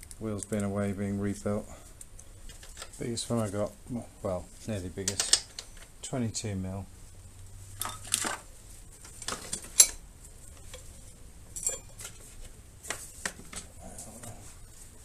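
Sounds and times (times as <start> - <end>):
metal hand tools clinking: 9.2 - 10.0, 11.5 - 12.1.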